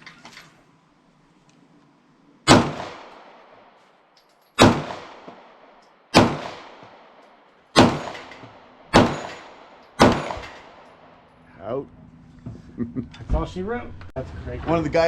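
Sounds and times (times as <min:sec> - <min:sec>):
pistol shots: 0:02.4 - 0:03.8, 0:04.6 - 0:11.2.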